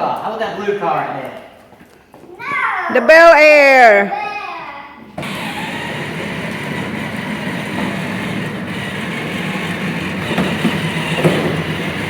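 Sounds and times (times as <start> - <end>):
plastic wheels rolling on floor: 5.2 - 12.0
toy car electric motors running: 5.2 - 12.0.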